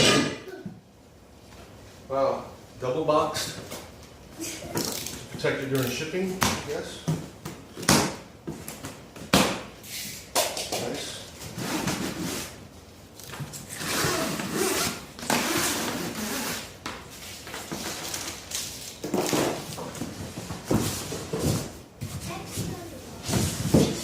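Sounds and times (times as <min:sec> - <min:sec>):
sharp knocks on boxes: 0:06.4 - 0:09.7.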